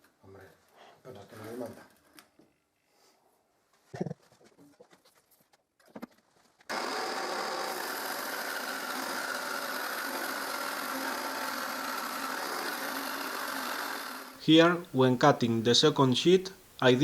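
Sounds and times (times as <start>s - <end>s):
jigsaw cutting metal sheet: 6.7s - 14.4s.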